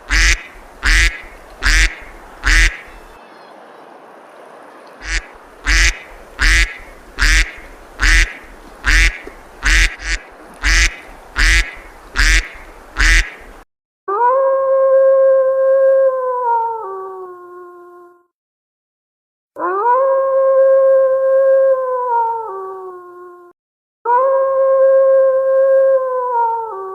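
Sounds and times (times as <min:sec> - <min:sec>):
duck quacking: 0:00.0 - 0:03.1, 0:05.0 - 0:13.5
long howl-like call: 0:14.1 - 0:18.2, 0:19.6 - 0:23.5, 0:24.1 - 0:26.9.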